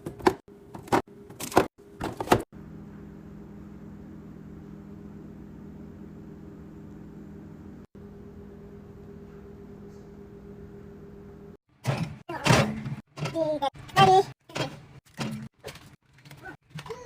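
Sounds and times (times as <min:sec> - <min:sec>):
machine hum: 0:00.5 - 0:12.1.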